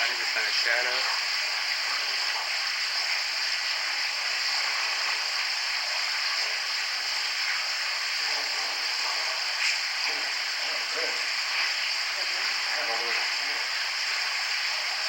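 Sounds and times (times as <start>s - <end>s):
high-pitched hiss: 6.5s - 15.0s.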